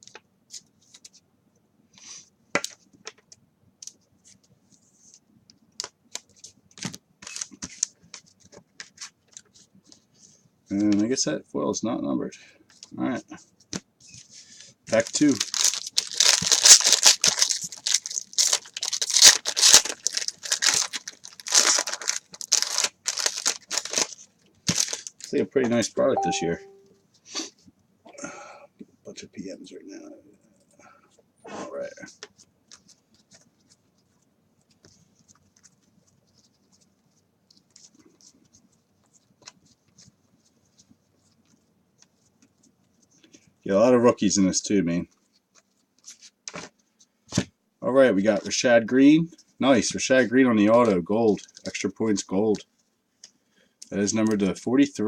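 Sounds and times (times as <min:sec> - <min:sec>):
plastic wrapper tearing and crinkling: 0:14.9 - 0:25.4.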